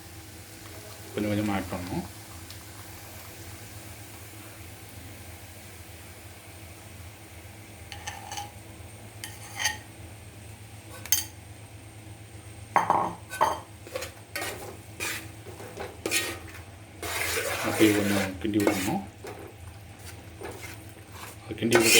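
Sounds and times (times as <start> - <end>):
metal spoon scraping a pan: 7.9 - 8.6, 9.2 - 9.8, 13.3 - 21.9.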